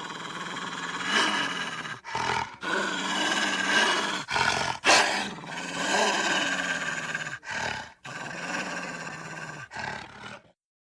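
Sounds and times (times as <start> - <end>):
wolf growls and snarls: 0.0 - 10.6.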